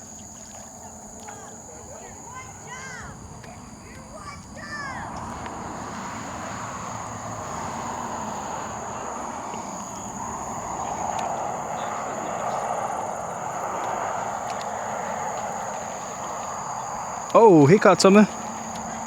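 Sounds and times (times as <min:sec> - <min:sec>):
night insects droning: 0:00.0 - 0:19.0
steady rushing noise: 0:04.1 - 0:19.0.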